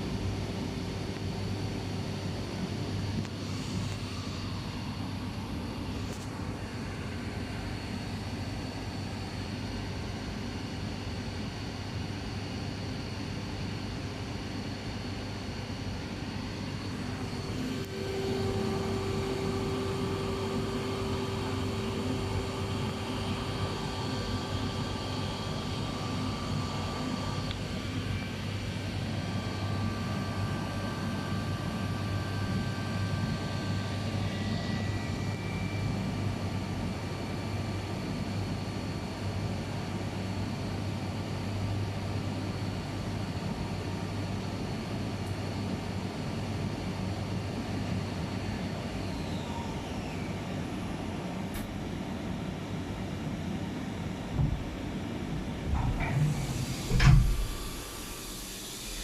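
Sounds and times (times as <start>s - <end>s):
cnc machine drone: 0.0s - 45.2s, 46.8s - 59.0s
machine whining tones: 16.5s - 36.3s, 48.9s - 51.6s, 54.2s - 59.0s.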